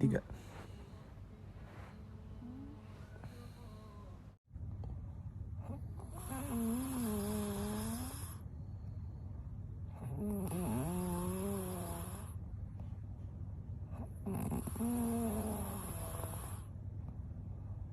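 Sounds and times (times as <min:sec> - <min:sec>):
woman snoring: 0:01.9 - 0:04.4, 0:05.7 - 0:08.4, 0:10.0 - 0:12.4, 0:14.0 - 0:16.7.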